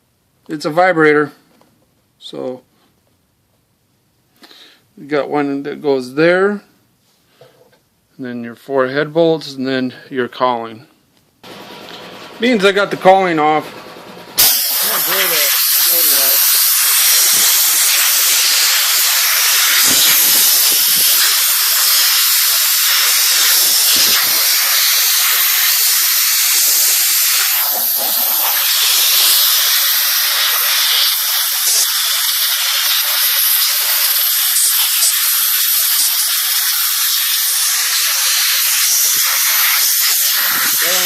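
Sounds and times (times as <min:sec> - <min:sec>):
loud steady hiss: 0:14.4 - 0:41.0.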